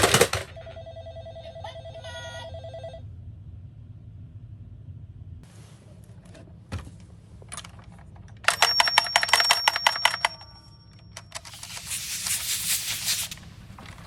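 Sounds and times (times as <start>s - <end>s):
toy car rolling: 0.0s - 0.5s, 7.5s - 10.5s
small electric bell ringing: 8.4s - 11.8s.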